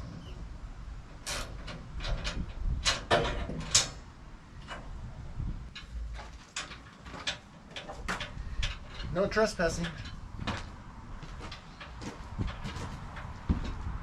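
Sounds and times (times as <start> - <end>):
sharp knocks and clatter: 1.2 - 4.0, 9.8 - 13.9.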